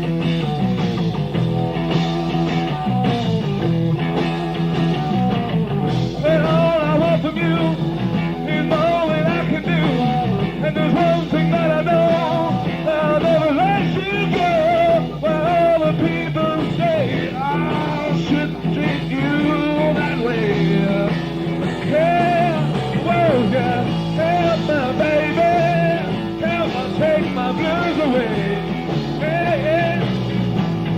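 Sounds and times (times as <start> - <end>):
bending lead guitar line: 0.0 - 30.9
live rock band playing: 0.0 - 30.9.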